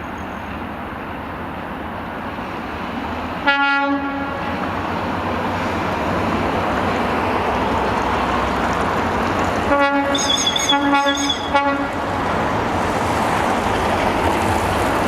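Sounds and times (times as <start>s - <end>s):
train rumbling on rails: 0.0s - 15.0s
train horn blast: 3.4s - 4.5s, 9.7s - 12.0s.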